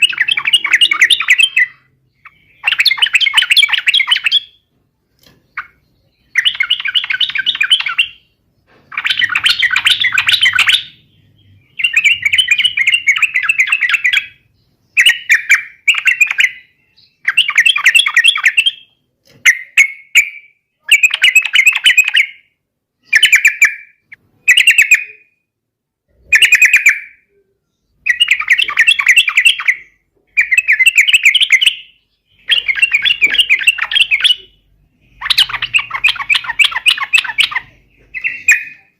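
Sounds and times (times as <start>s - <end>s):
bulbul singing chattering phrases: 0.0s - 4.5s, 26.2s - 38.9s.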